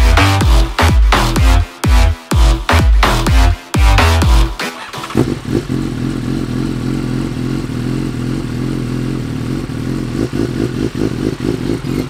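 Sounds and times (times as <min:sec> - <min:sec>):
motorcycle engine idling: 0:04.8 - 0:12.0.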